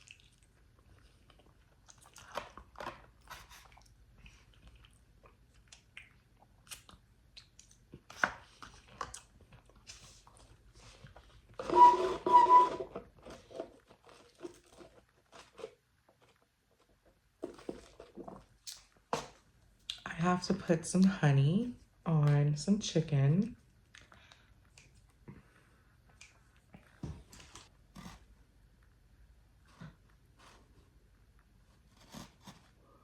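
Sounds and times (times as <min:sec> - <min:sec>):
wet mouth sounds: 0:00.0 - 0:00.6
person chewing food: 0:00.0 - 0:11.6.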